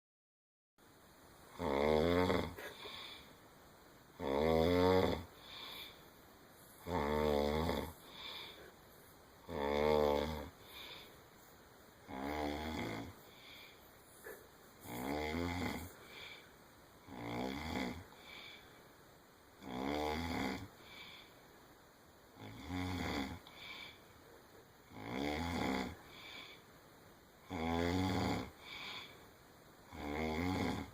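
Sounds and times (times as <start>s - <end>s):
quiet breathing: 1.0s - 30.9s
person snoring: 1.5s - 3.3s, 4.2s - 6.0s, 6.7s - 8.8s, 9.4s - 11.2s, 12.0s - 18.8s, 19.6s - 21.3s, 22.4s - 24.0s, 24.9s - 26.6s, 27.4s - 29.2s, 29.9s - 30.9s.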